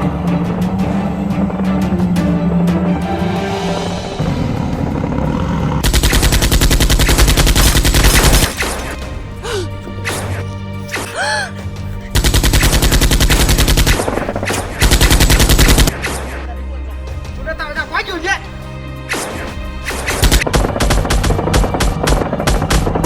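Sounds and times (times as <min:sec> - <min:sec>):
background music: 0:00.0 - 0:23.0
automatic gunfire bursts: 0:05.8 - 0:09.1, 0:12.2 - 0:16.3.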